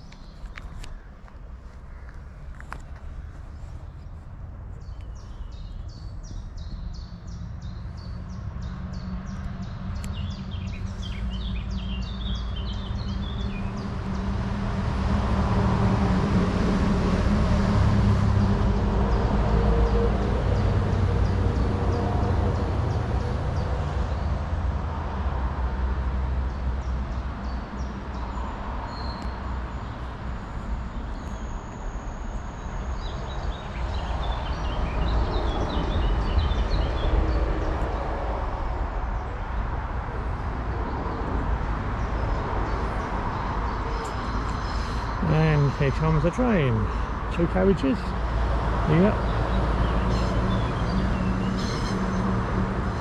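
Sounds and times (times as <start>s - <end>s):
birds chirping: 0.0s - 14.8s, 26.8s - 38.1s, 39.2s - 53.0s
heavy vehicle engine passing: 8.6s - 24.7s, 41.4s - 53.0s.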